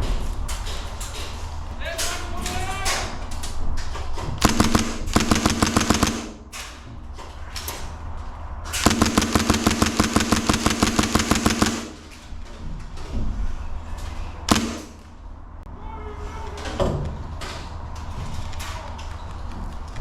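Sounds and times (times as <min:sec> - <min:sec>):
steady hum: 0:04.3 - 0:07.2, 0:07.8 - 0:15.7
airsoft rifle automatic fire: 0:04.4 - 0:06.6, 0:08.8 - 0:12.2, 0:14.5 - 0:15.1.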